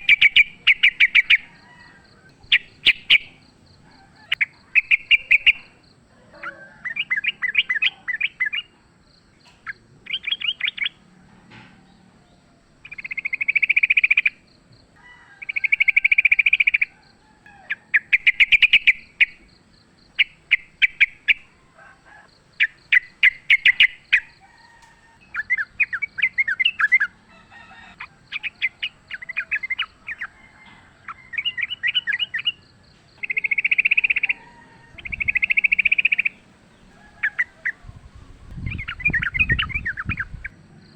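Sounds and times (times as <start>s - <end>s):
bird chattering trills: 0.0s - 8.8s, 9.4s - 11.0s, 12.8s - 14.4s, 17.6s - 19.5s, 22.5s - 24.4s, 25.3s - 27.2s, 27.8s - 32.6s, 33.2s - 40.5s.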